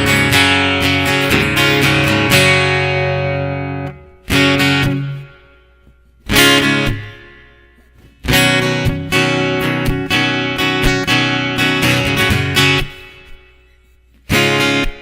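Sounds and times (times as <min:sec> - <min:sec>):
acoustic guitar strumming: 0:00.0 - 0:15.0.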